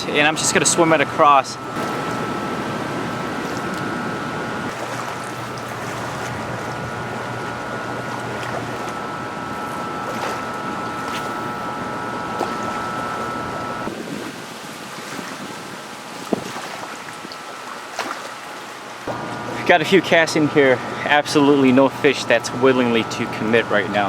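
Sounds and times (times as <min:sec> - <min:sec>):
faint high hum: 0:00.0 - 0:24.0
river water rushing: 0:01.7 - 0:09.0.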